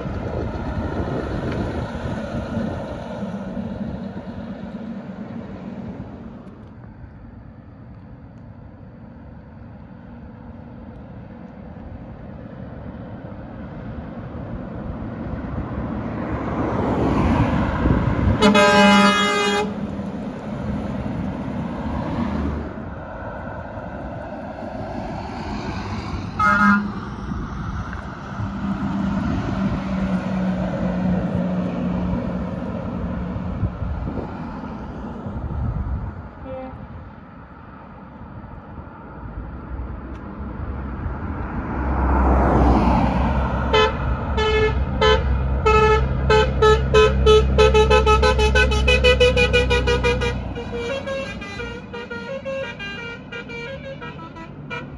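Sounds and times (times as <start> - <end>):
heavy trucks engine drone: 0.0 - 54.9
truck horn toots: 18.4 - 19.8, 26.4 - 27.1, 36.4 - 37.0, 43.7 - 54.9.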